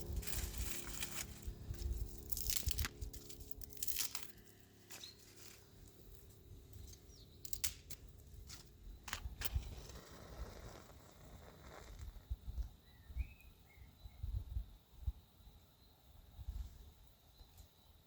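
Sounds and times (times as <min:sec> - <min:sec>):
kindling rustling and snapping: 0:00.0 - 0:06.0, 0:06.8 - 0:10.0.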